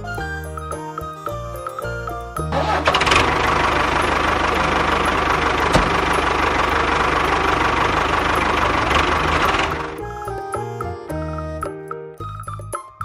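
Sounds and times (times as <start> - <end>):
small engine running with even pulsing: 2.5 - 10.0.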